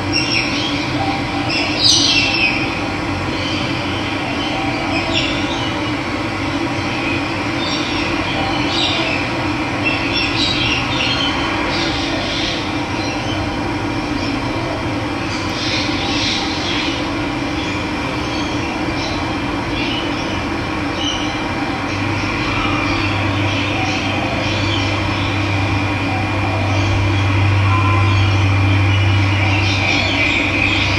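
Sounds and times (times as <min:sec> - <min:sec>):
birds chirping: 0:00.1 - 0:02.7.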